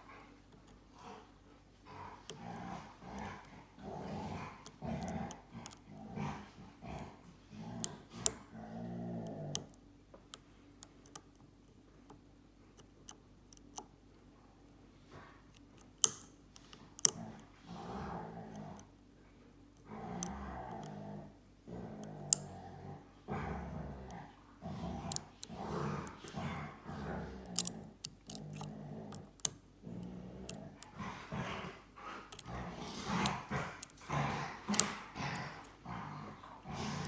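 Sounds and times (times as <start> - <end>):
dogs growling in play: 0.0 - 9.8, 15.0 - 37.0
lock picks clicking in padlock: 4.6 - 5.8, 7.8 - 8.4, 10.8 - 11.4, 15.5 - 17.2, 22.0 - 22.5, 25.1 - 26.3, 27.5 - 29.6, 33.1 - 34.1, 34.7 - 35.5.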